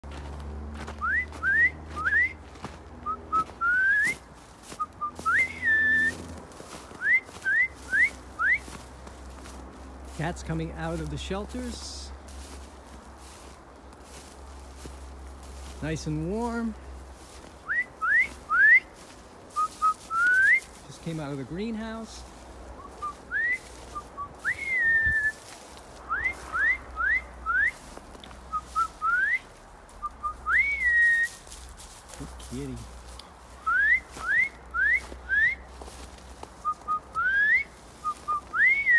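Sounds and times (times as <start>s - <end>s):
person whistling rising notes: 1.0s - 2.4s, 3.1s - 4.2s, 4.8s - 6.2s, 17.7s - 18.9s, 24.2s - 25.4s, 30.1s - 31.3s, 33.6s - 35.6s, 36.6s - 38.9s.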